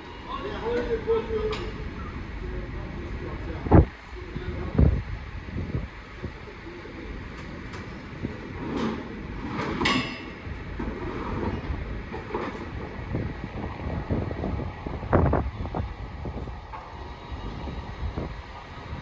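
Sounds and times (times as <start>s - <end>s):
low construction rumble: 0.0s - 19.0s
wind on microphone: 3.3s - 6.5s, 8.1s - 19.0s.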